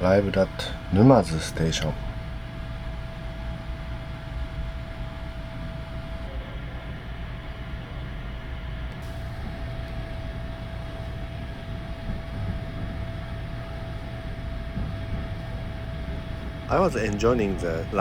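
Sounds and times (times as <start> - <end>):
train rumbling: 0.0 - 18.0
thin hum: 8.9 - 18.0.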